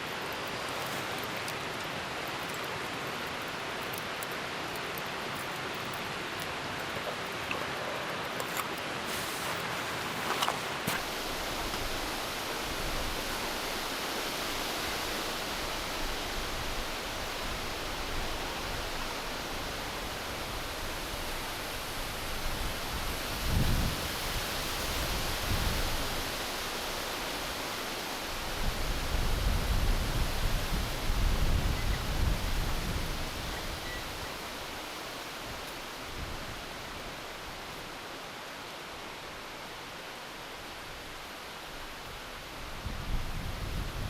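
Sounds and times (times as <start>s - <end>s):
wind gusts buffeting microphone: 11.0s - 26.6s, 28.4s - 34.8s, 42.6s - 44.0s.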